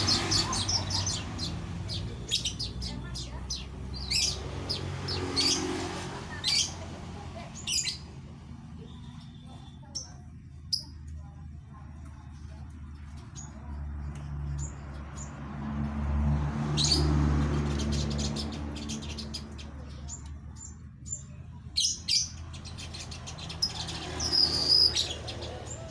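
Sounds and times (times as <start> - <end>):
bird chirping and chattering: 0.0 - 6.9, 7.5 - 8.2, 8.8 - 11.0, 16.8 - 25.9.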